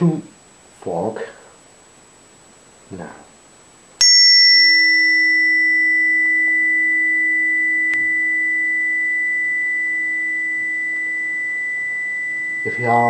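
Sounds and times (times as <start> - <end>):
tuning fork ringing: 4.0 - 13.0.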